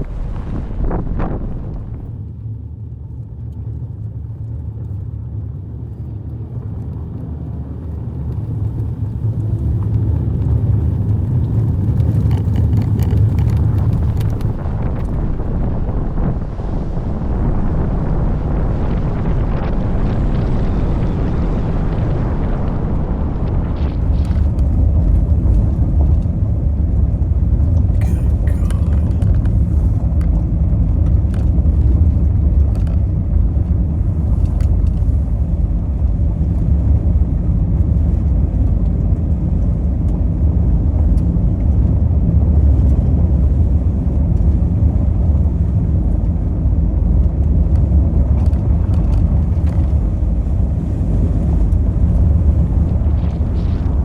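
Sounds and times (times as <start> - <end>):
road and wind noise: 0.0 - 54.0
light ticks: 34.3 - 35.1.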